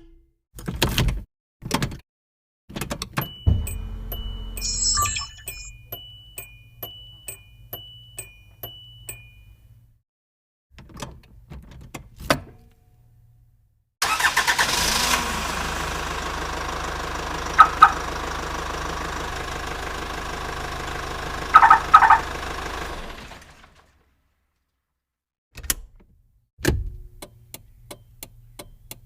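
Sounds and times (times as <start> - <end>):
dashboard warning chime dinging: 3.1 - 9.8, 21.5 - 22.3
car engine idling: 3.5 - 4.6, 14.1 - 24.0.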